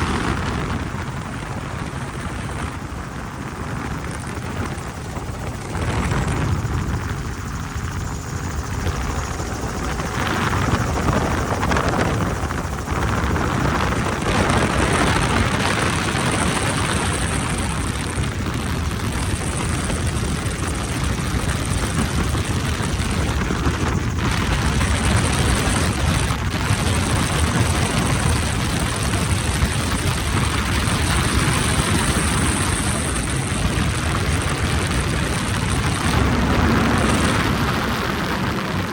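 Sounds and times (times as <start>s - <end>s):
helicopter rotor and engine: 0.0s - 38.9s.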